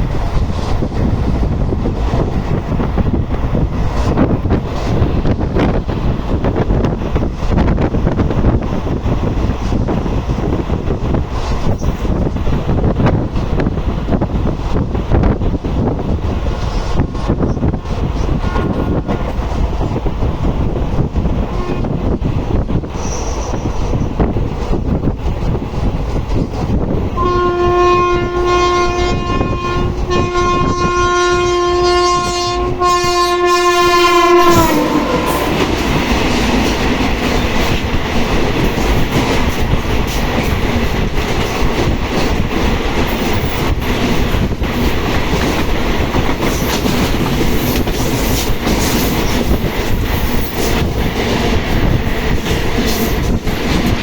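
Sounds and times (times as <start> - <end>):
train wagons rumbling: 0.0 - 54.0
locomotive horn blast: 18.4 - 19.4, 27.2 - 36.2.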